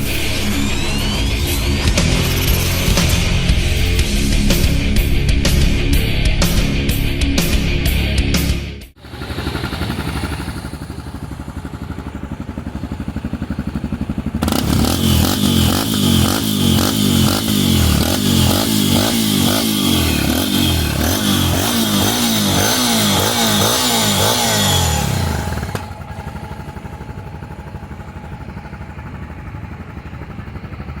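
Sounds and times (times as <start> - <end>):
motorcycle engine idling: 9.0 - 31.0
motorcycle engine throttle blips: 9.0 - 31.0.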